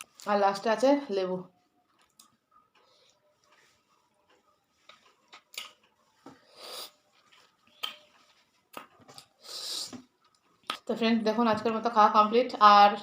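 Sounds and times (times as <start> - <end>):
mouth clicks and smacks: 5.3 - 5.8, 10.6 - 10.9.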